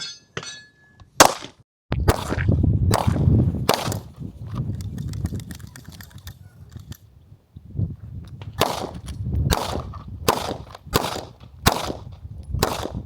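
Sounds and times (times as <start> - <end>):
handgun shots: 1.2 - 4.1, 8.6 - 13.0
faint distant gunshots: 2.9 - 4.1, 8.6 - 13.0.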